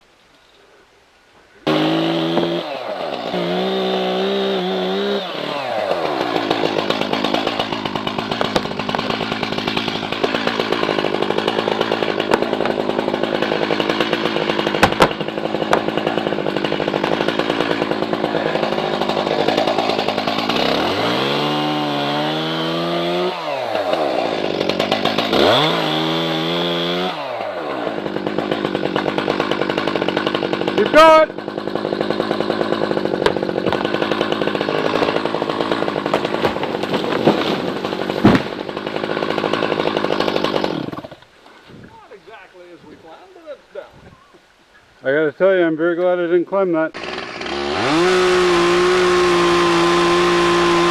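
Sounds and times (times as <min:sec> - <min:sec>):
chainsaw cutting wood: 0:01.6 - 0:41.8, 0:46.9 - 0:50.9
wood cracking: 0:01.7 - 0:41.7.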